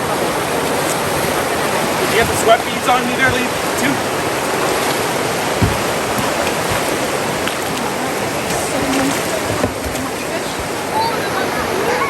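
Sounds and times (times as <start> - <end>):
river water rushing: 0.0 - 12.0
dull knock: 5.5 - 7.2.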